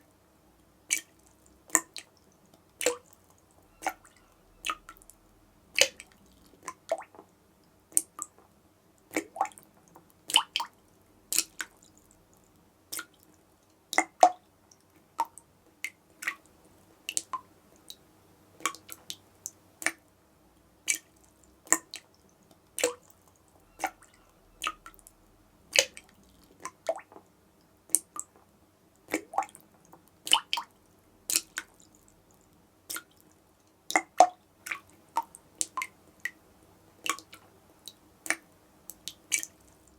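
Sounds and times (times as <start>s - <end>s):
tap dripping water drops: 18.6s - 19.2s.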